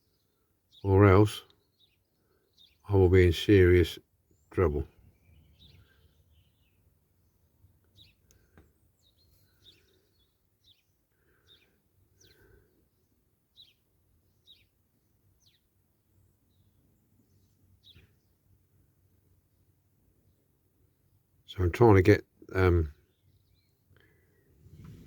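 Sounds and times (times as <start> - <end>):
bird chirping: 0.0 - 3.0, 4.2 - 18.5, 22.9 - 25.0.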